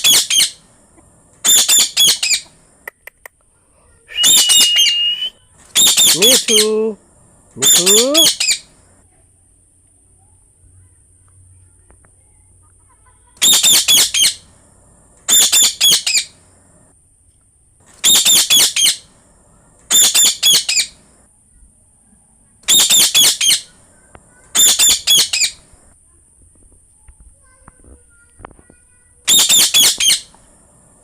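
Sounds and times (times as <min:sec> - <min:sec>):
parrot calling shrilly: 0:00.0 - 0:00.6, 0:01.4 - 0:02.6, 0:04.1 - 0:08.8, 0:13.4 - 0:14.5, 0:15.3 - 0:16.4, 0:18.0 - 0:19.1, 0:19.9 - 0:21.0, 0:22.6 - 0:23.8, 0:24.5 - 0:25.7, 0:29.3 - 0:30.4.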